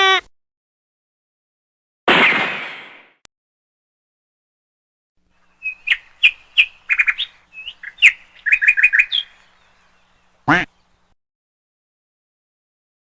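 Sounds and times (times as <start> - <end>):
bird chirping and trilling: 5.4 - 11.1.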